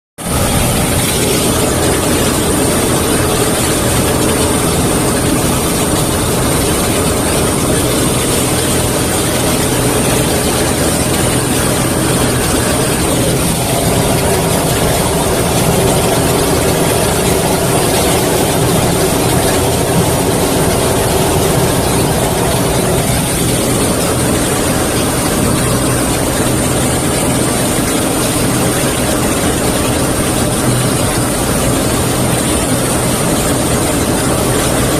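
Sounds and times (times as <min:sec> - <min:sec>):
airplane engine drone: 0:00.2 - 0:34.9.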